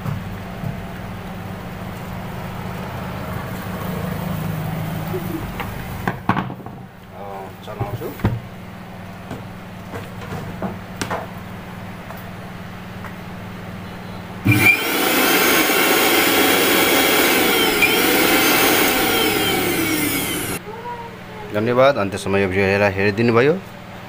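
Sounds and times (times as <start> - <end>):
mixer grinder motor running: 14.4 - 20.6.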